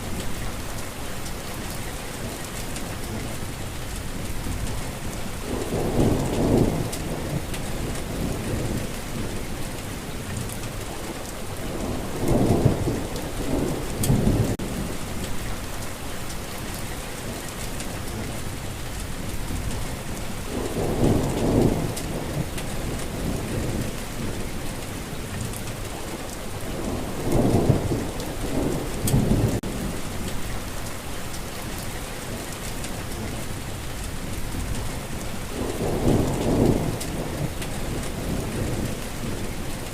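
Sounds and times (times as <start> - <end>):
steady rain falling: 0.0 - 39.9
rolls of thunder: 35.6 - 39.4.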